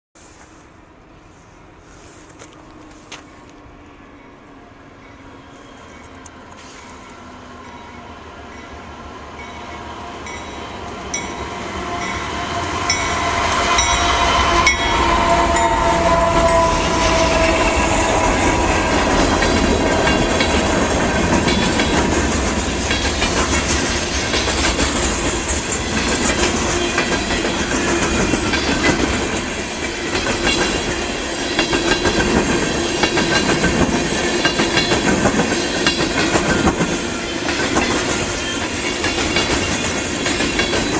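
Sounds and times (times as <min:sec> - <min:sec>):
freight train passing: 0:00.2 - 0:40.9
train horn chord: 0:11.6 - 0:19.5
wheels clicking over rail joints: 0:15.6 - 0:40.9.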